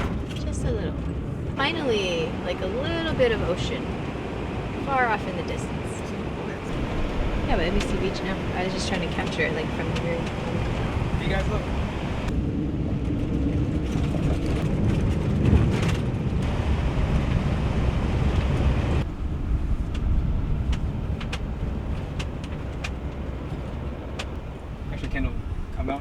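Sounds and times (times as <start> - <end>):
road and engine rumble: 0.0 - 26.0
high road hiss: 10.4 - 12.3, 16.4 - 26.0.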